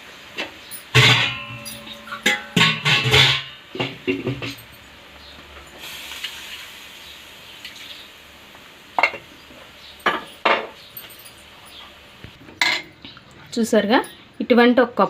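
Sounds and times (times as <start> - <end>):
utensils clanking against pan: 0.4 - 4.9, 9.0 - 12.0
water hissing in hot pan: 5.7 - 10.7.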